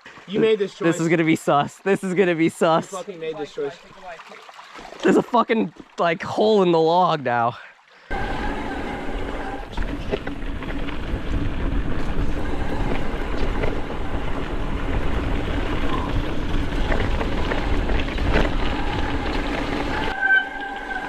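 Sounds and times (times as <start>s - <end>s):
continuous low rumble: 8.1s - 21.0s
off-road vehicle engine running: 8.1s - 21.0s.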